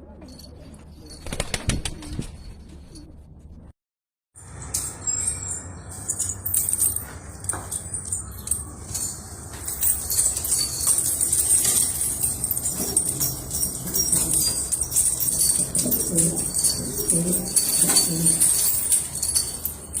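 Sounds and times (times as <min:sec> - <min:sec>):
light metallic jingling: 0:04.5 - 0:20.0
pigeons moving about: 0:06.1 - 0:20.0.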